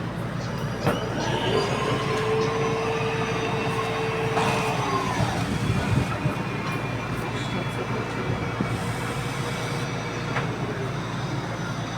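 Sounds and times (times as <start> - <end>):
machine blower whining: 0.9 - 9.9.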